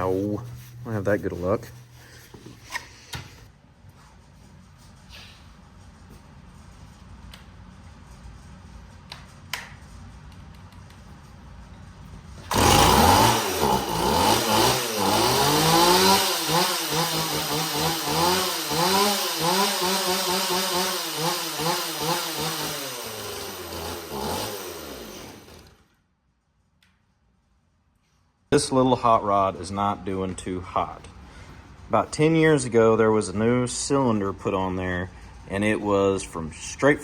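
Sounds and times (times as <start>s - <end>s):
chainsaw engine surging unevenly: 12.5s - 25.8s.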